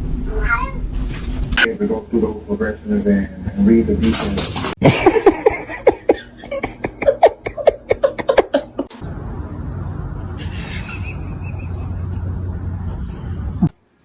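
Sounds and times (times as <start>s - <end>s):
steady low hum: 1.6s - 13.8s
person laughing: 4.8s - 8.9s, 10.4s - 12.3s.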